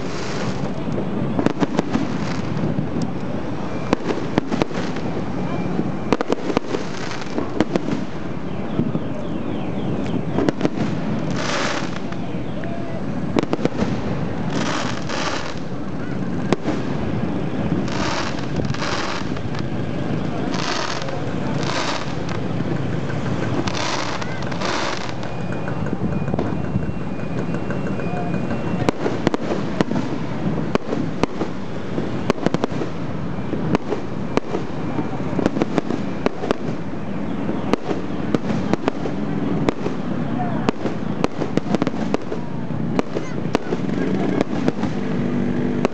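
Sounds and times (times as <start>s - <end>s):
firework bangs: 0.0s - 9.0s, 10.1s - 45.9s
firework crackling: 0.0s - 9.1s, 10.0s - 45.9s
continuous noisy background: 0.0s - 45.9s
crowd hubbub: 0.0s - 45.9s
fireworks shells cracking: 13.4s - 15.8s, 17.8s - 19.7s, 20.5s - 26.5s.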